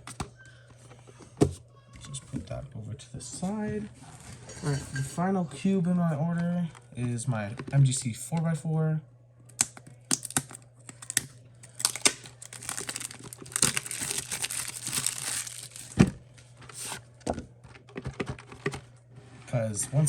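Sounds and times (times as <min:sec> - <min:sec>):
packaging crinkling and tearing: 0:09.5 - 0:17.0.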